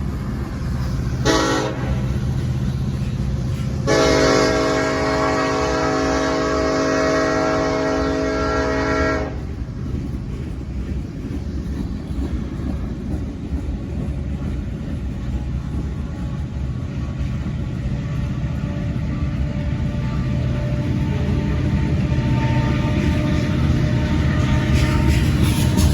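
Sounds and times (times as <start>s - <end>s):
train rumbling: 0.0s - 25.9s
locomotive air horn chord: 1.2s - 2.0s, 3.8s - 9.4s, 20.4s - 25.9s.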